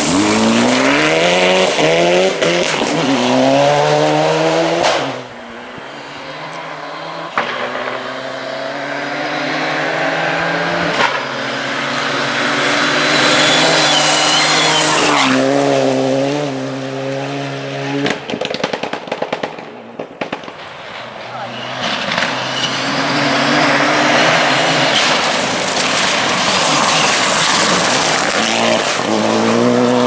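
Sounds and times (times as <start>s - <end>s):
rally car engine driven hard: 0.0s - 30.0s
tyre and road noise: 0.0s - 30.0s
anti-lag pops and bangs: 18.0s - 21.0s.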